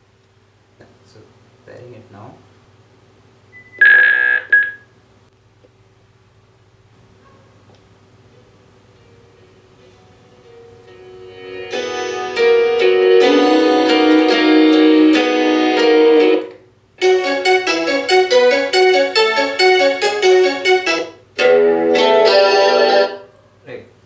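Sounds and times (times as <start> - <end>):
piano music through speaker: 8.5 - 23.3.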